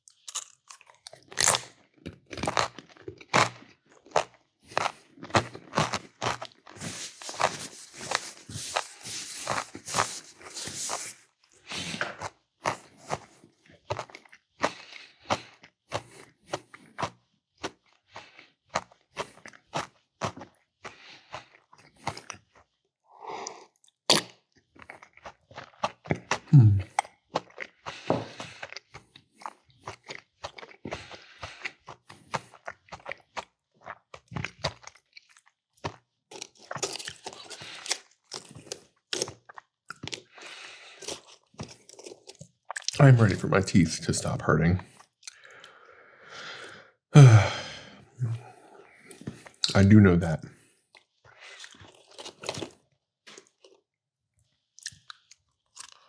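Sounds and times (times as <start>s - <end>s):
person chewing crunchy crackers: 0.0s - 43.4s, 44.9s - 50.0s, 50.6s - 56.0s
low vocal grunt: 26.5s - 26.9s, 47.2s - 48.5s.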